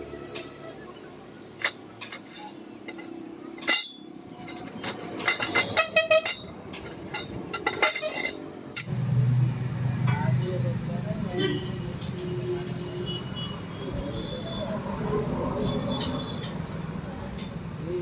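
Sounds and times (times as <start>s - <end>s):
metal parts clinking: 1.5s - 8.9s.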